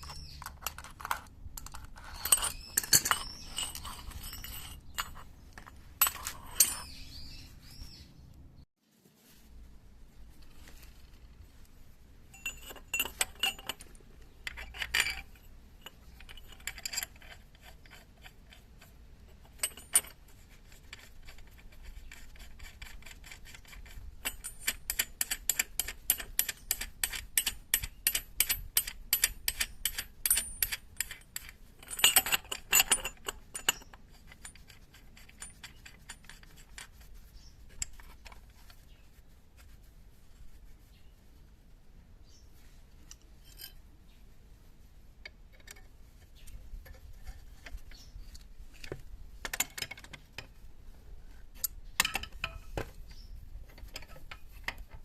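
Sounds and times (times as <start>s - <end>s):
metal tools clinking: 0.0s - 7.3s, 12.3s - 38.4s, 43.1s - 43.8s, 51.6s - 55.0s.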